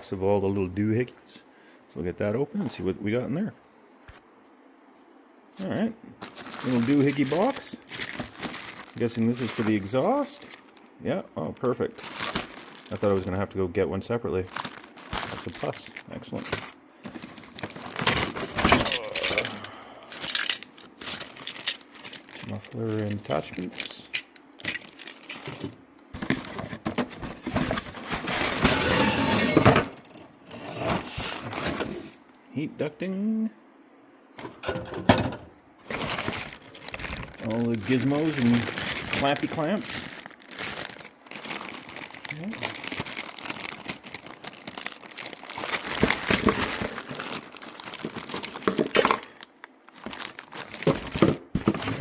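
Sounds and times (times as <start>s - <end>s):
packaging crinkling and rustling: 6.2s - 32.2s, 35.8s - 52.0s
metal parts clinking and rattling: 14.6s - 31.9s, 34.4s - 49.4s, 50.0s - 52.0s.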